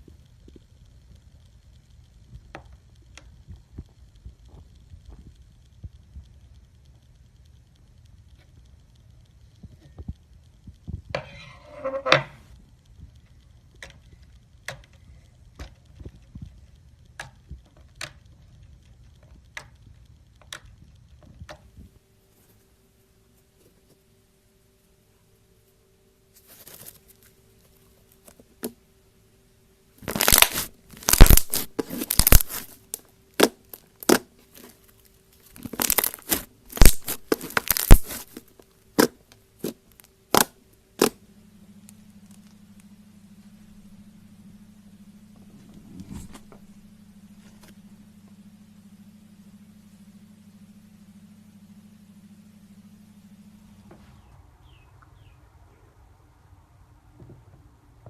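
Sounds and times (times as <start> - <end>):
slime popping and crackling: 30.0 - 41.2.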